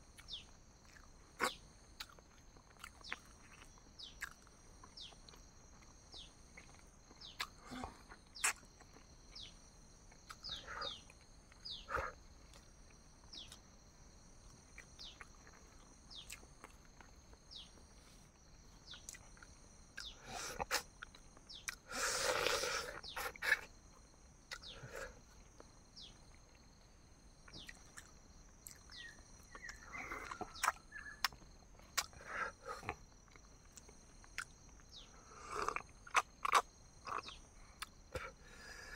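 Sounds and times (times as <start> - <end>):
person eating mouth sounds: 6.6 - 9.0, 20.0 - 23.7, 27.5 - 34.6, 35.4 - 38.4.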